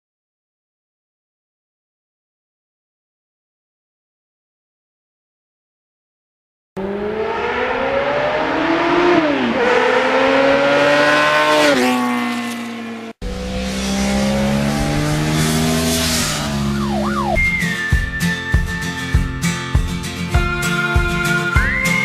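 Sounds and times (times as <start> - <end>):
vehicle engine accelerating: 6.8 - 18.4.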